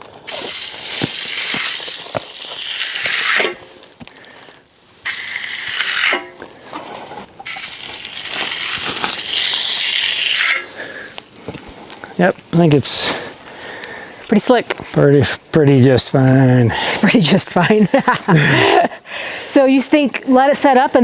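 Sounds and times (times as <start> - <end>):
trowel scraping wet concrete: 0.3 - 3.7, 5.0 - 6.4, 7.2 - 10.9.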